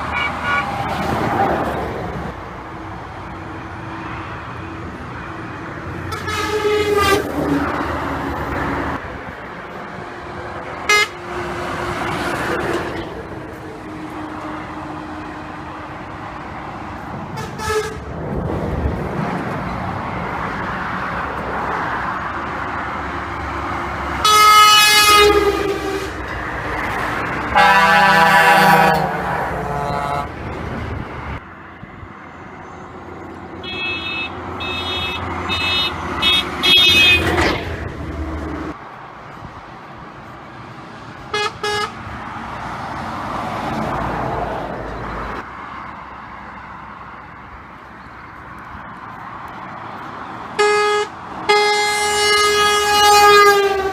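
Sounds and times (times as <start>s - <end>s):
truck horns: 0.0s - 1.1s, 5.9s - 8.2s, 9.9s - 16.2s, 17.3s - 18.2s, 24.1s - 30.5s, 33.6s - 37.9s, 41.2s - 42.1s, 50.5s - 53.9s
truck engines and tyres: 0.0s - 53.9s.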